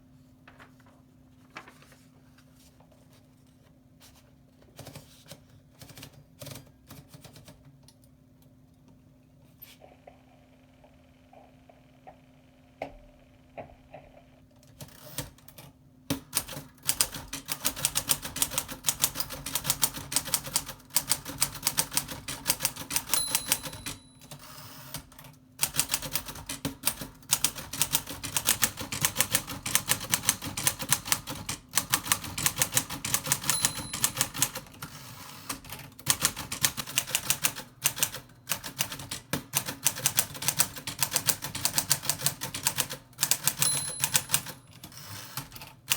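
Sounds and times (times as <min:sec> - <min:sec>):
typewriter margin bell ringing: 0:22.9 - 0:25.0, 0:33.0 - 0:34.7, 0:43.3 - 0:45.4.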